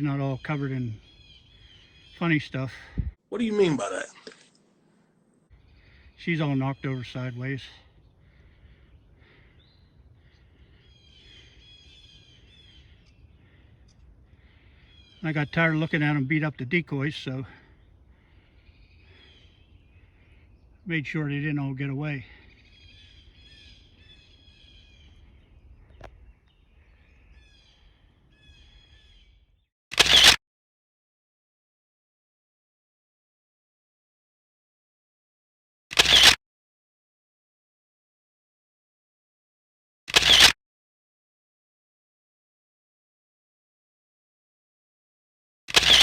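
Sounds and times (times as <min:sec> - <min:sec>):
faint songbird song: 0:00.0 - 0:03.2, 0:05.0 - 0:30.2
small birds chirping: 0:00.0 - 0:04.6, 0:05.2 - 0:30.3, 0:45.7 - 0:46.0
sharp click: 0:35.9 - 0:36.4, 0:40.1 - 0:40.6, 0:45.7 - 0:46.0.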